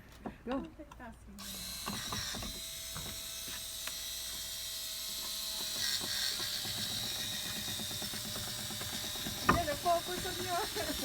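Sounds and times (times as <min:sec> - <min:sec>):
drill ratcheting clatter: 0:01.4 - 0:11.0
electric drill motor whine: 0:01.4 - 0:11.0.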